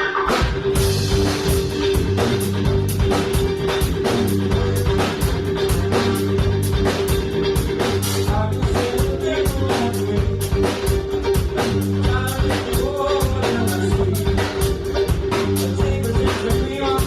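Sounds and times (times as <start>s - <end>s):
bass guitar: 0.0s - 17.0s
drum kit beat: 0.0s - 17.0s
electric guitars: 0.0s - 17.0s
person singing: 8.2s - 17.0s.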